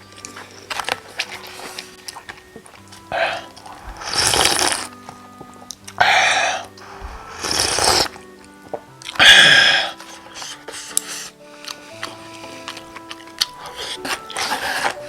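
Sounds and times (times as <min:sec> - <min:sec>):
faint background music: 0:00.0 - 0:15.0
loud slurps of noodles: 0:03.2 - 0:04.9, 0:07.2 - 0:08.2.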